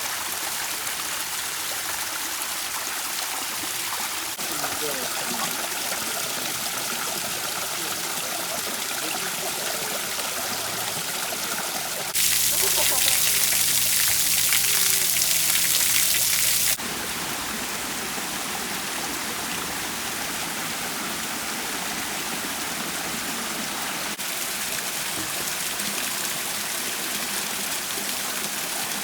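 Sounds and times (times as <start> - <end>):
waterfall rushing: 4.3 - 17.2.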